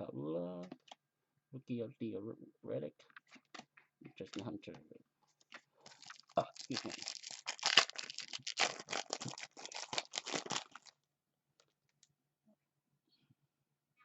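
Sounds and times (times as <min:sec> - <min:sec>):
trading cards flipping: 0:05.5 - 0:10.9.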